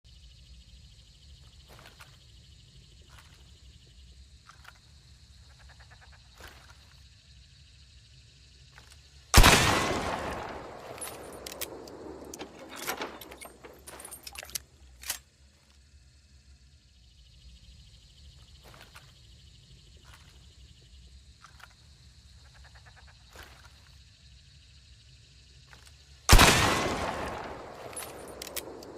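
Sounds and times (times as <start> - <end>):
rifle shot: 9.4 - 14.2, 26.3 - 28.9
metallic handling clicks: 10.0 - 15.2, 26.4 - 28.9
sharp clicks and knocks: 10.2 - 15.2, 27.2 - 28.9.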